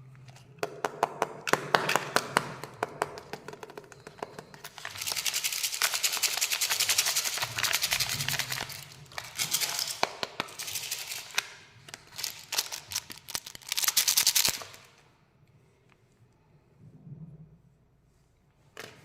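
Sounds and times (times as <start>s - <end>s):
plastic packaging crinkling: 4.5s - 14.9s.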